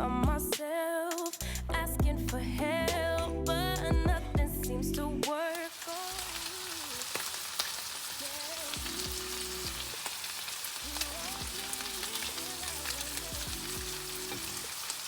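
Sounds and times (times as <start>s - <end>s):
pop song: 0.0s - 15.0s
food sizzling in a frying pan: 5.5s - 15.0s.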